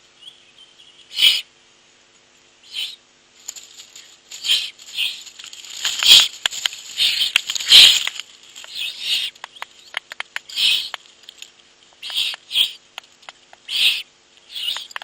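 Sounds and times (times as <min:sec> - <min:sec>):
owlets hissing begging calls: 0:01.1 - 0:01.5, 0:02.6 - 0:03.0, 0:04.4 - 0:05.3, 0:06.0 - 0:08.1, 0:08.7 - 0:09.5, 0:10.4 - 0:11.0, 0:12.0 - 0:12.9, 0:13.6 - 0:15.0
sharp clicks and scratches: 0:03.4 - 0:13.7, 0:14.6 - 0:15.0.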